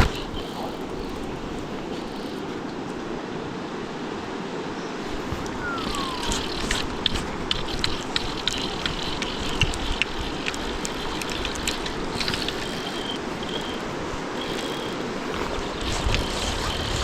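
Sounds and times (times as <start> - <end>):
river flowing: 0.0 - 17.0.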